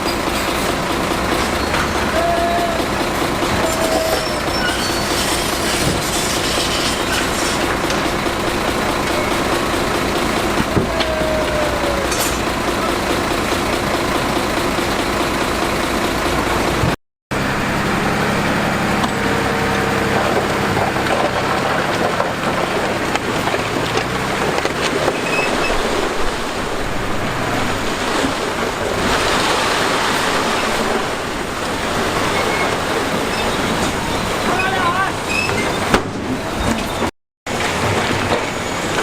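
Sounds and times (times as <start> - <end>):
construction machinery engine drone: 0.0 - 39.0
rough rushing noise: 16.3 - 39.0.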